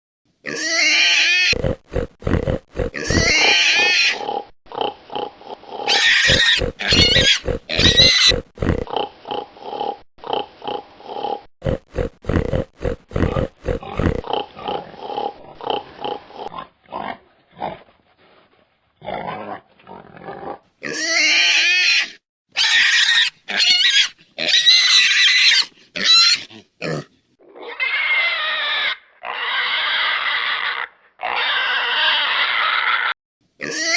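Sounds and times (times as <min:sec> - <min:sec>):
pigs squealing: 0:00.4 - 0:17.8, 0:19.0 - 0:33.9
pigs grunting: 0:00.5 - 0:17.9, 0:19.0 - 0:21.7, 0:25.6 - 0:28.4.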